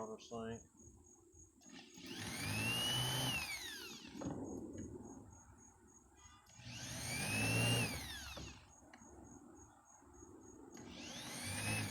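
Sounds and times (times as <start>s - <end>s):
power drill whining: 1.6s - 4.3s, 6.3s - 8.7s, 10.8s - 11.9s.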